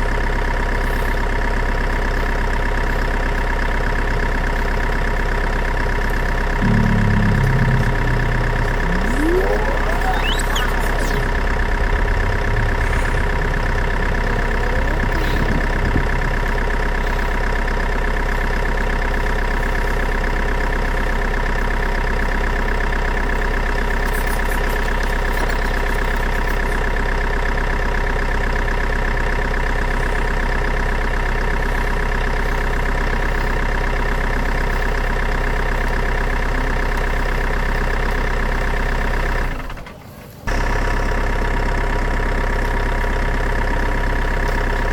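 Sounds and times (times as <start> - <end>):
engine idling: 0.0 - 44.9
brief rising whines: 6.6 - 15.5.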